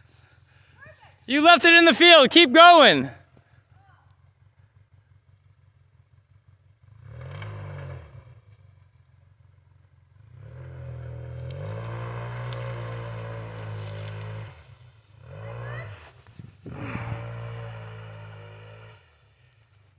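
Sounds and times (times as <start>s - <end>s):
off-road vehicle engine revving: 5.8s - 19.9s.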